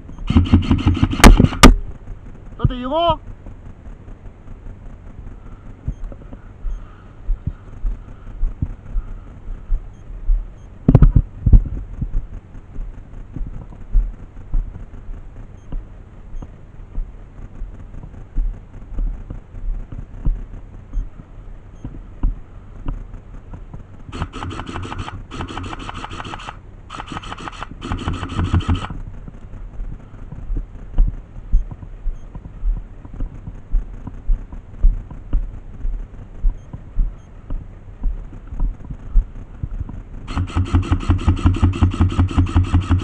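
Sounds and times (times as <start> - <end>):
regular low thumps: 0.0 - 43.0
airsoft gun full-auto bursts: 0.2 - 1.8, 24.1 - 29.0, 40.3 - 43.0.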